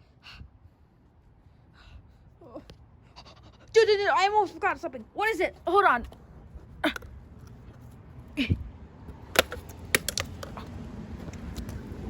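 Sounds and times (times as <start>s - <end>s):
small objects clicking and knocking: 9.4s - 10.7s.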